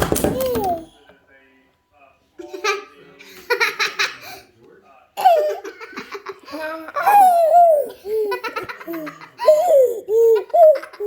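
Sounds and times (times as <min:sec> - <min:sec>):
child giggling: 0:05.2 - 0:11.0.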